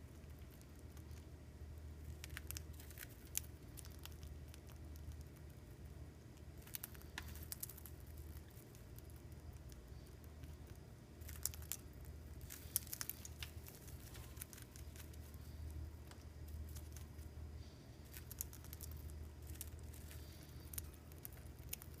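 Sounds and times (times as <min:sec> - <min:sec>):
steady low hum: 0:00.0 - 0:22.0
beaks cracking seed husks: 0:06.2 - 0:17.4, 0:18.0 - 0:22.0.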